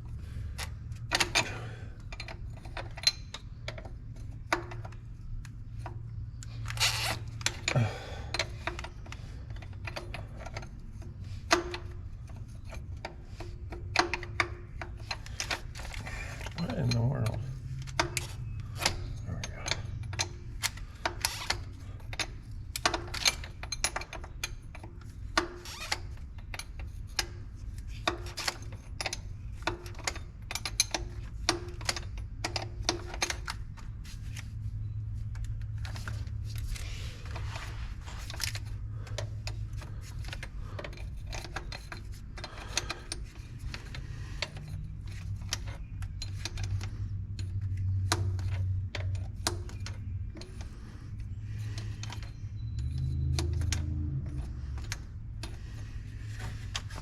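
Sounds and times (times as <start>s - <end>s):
steady low hum: 0.0s - 57.0s
irregular metallic clicks: 51.5s - 57.0s.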